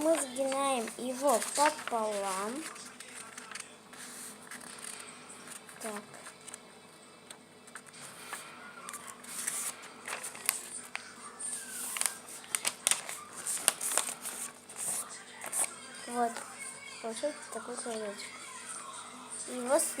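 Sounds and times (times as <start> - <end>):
paper folding and crackling: 0.0 - 18.2.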